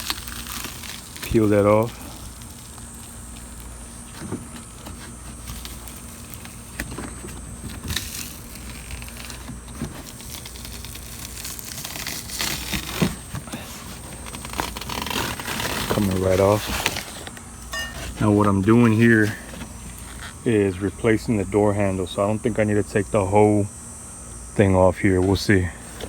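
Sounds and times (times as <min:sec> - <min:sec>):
weather stripping peeling off: 0:00.0 - 0:20.5.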